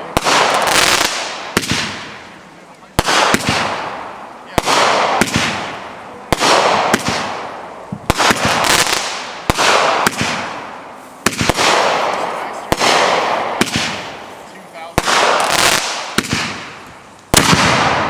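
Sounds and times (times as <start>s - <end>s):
crackling hiss: 0.0s - 18.0s
fireworks bangs: 0.0s - 18.0s.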